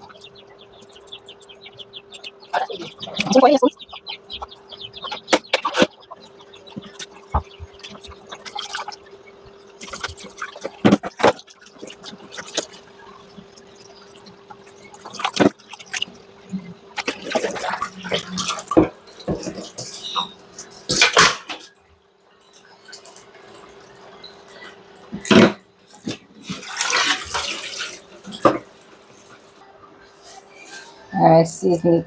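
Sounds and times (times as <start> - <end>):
faint steady hum: 0.0 - 32.0
water splashing and dripping: 4.7 - 19.9, 25.9 - 28.7.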